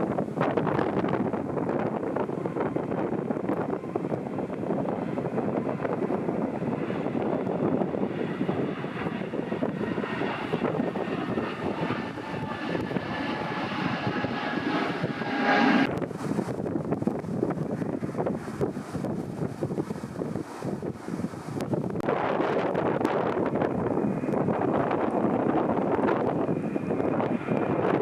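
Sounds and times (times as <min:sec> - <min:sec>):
airliner engine rush: 0:00.0 - 0:28.0
faint high whine: 0:08.8 - 0:16.1.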